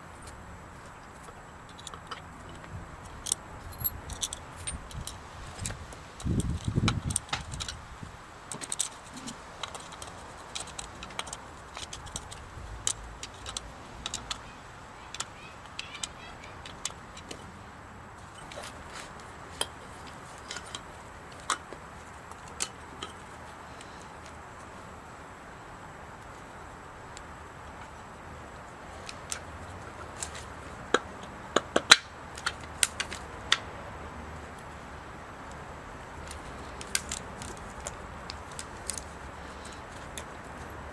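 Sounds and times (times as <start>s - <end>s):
light metallic clicks and clinks: 1.3s - 7.8s, 18.2s - 24.4s.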